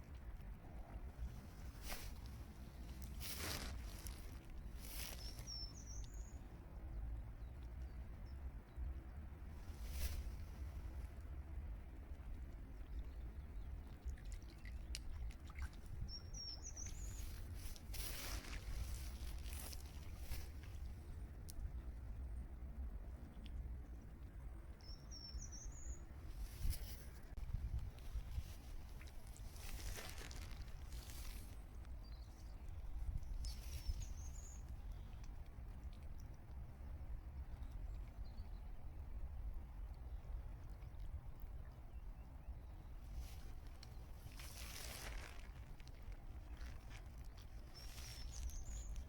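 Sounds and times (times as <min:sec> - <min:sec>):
small bird chirping: 0:02.7 - 0:06.5, 0:14.6 - 0:20.8, 0:24.8 - 0:27.0, 0:28.4 - 0:35.2, 0:46.4 - 0:49.0
water clicks and splashes: 0:10.0 - 0:21.9, 0:26.5 - 0:32.0, 0:33.0 - 0:38.1, 0:43.1 - 0:49.0.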